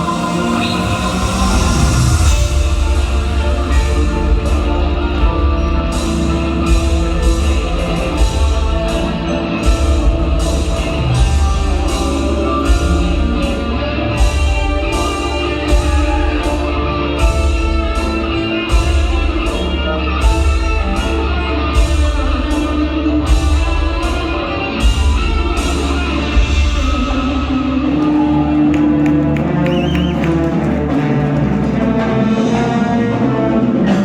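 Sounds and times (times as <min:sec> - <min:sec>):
marching band playing: 0:00.0 - 0:22.6, 0:23.3 - 0:33.7.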